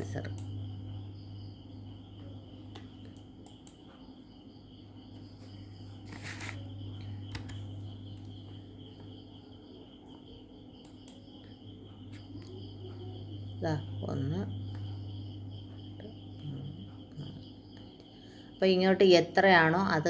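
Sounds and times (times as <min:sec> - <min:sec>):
crickets chirping: 0:00.0 - 0:20.0
low electrical hum: 0:00.0 - 0:20.0
short rustle: 0:06.0 - 0:06.6
faint clicks: 0:10.8 - 0:11.2.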